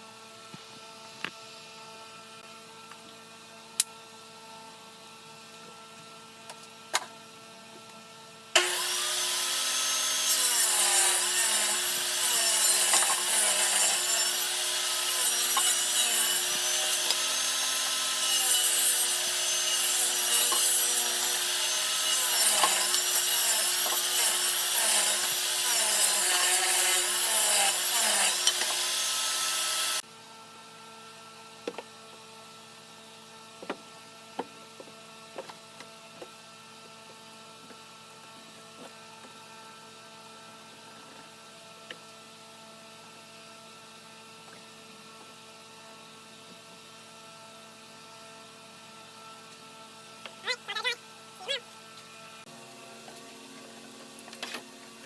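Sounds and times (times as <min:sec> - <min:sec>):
power tool cutting wood: 0:08.6 - 0:30.0.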